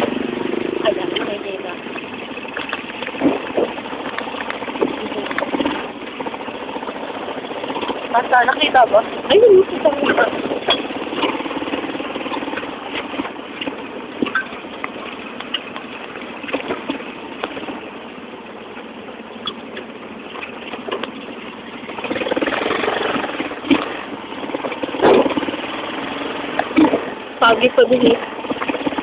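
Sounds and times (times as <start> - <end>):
motorcycle engine running: 0.0 - 29.0
vehicle rattling: 0.0 - 29.0.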